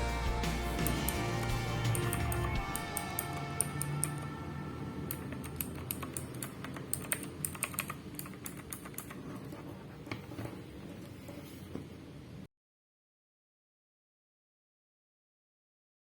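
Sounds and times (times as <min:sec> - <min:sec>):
mechanical keyboard key clicks: 0:05.3 - 0:09.2.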